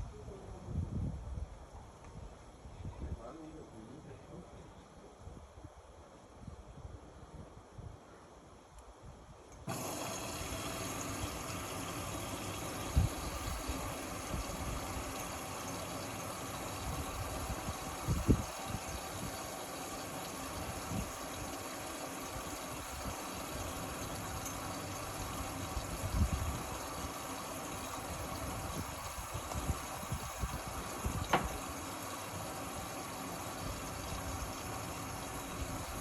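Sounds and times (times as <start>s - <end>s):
washing machine running: 9.7s - 36.0s.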